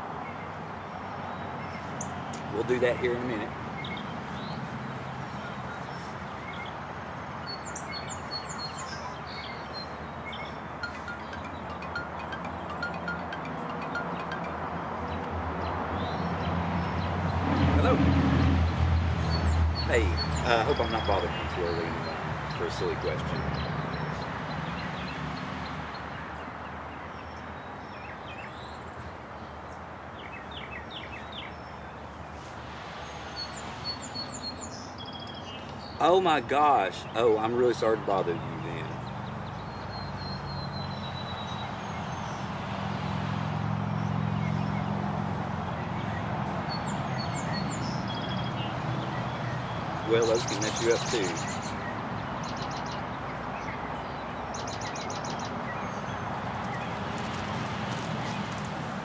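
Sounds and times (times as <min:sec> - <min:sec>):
small birds chirping: 0:00.2 - 0:42.6, 0:43.9 - 0:59.0
outdoor background hiss: 0:18.7 - 0:59.0.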